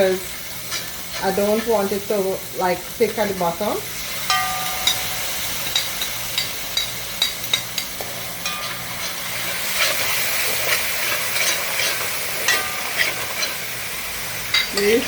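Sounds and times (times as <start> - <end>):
spices sizzling in a pot: 0.0 - 15.0
spoon clinking against pot: 4.3 - 9.2, 11.4 - 13.5.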